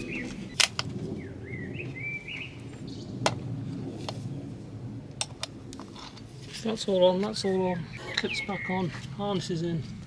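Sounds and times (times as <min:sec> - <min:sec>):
bird chirping: 0:00.0 - 0:03.2, 0:07.5 - 0:09.1.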